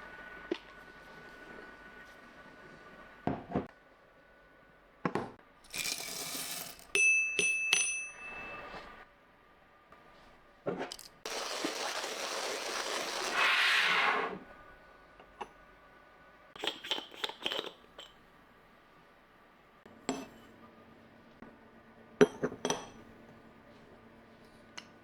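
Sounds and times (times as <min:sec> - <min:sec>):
glassware clinking: 0:06.9 - 0:09.0, 0:16.6 - 0:18.2, 0:22.2 - 0:23.0
liquid pouring: 0:11.3 - 0:13.5.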